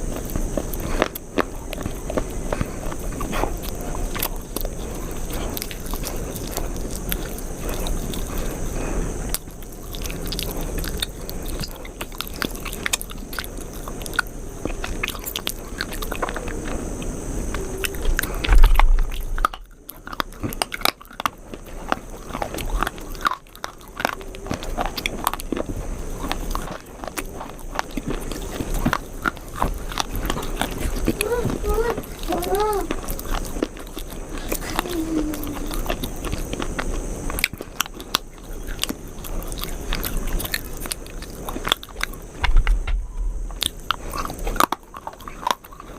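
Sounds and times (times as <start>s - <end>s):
chewing crunchy food: 0.0s - 42.8s, 43.4s - 45.9s
loud low bump: 18.4s - 19.5s, 42.4s - 43.6s.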